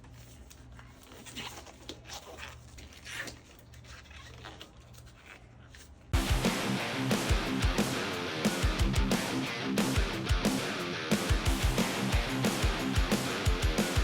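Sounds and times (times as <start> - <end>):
electric guitar music: 6.2 - 14.0.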